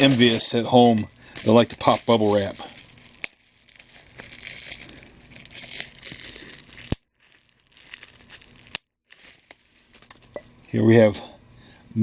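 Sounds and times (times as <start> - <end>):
bubble wrap crinkling: 0.0 - 10.6
bubble wrap snap: 1.4 - 10.2.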